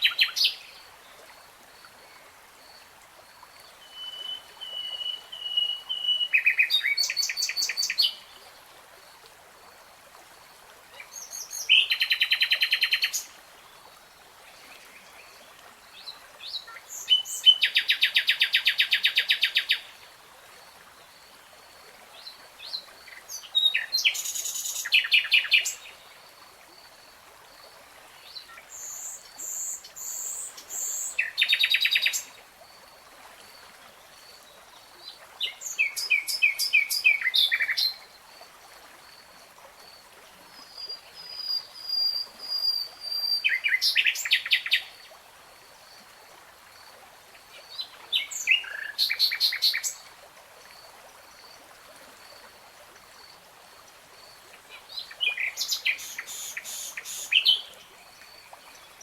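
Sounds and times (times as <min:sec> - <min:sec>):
nightingale singing trills: 0:03.8 - 0:08.2, 0:40.8 - 0:44.9, 0:55.0 - 0:57.7.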